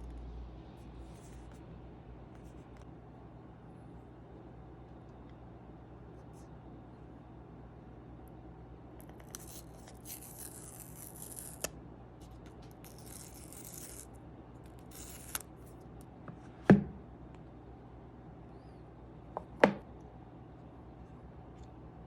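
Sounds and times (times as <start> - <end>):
paper rustling and tearing: 9.2 - 14.1, 14.7 - 15.5.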